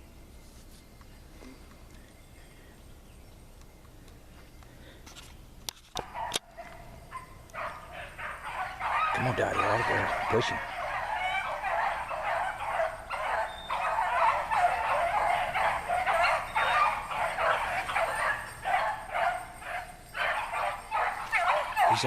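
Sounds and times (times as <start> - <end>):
hounds baying: 6.0 - 22.0.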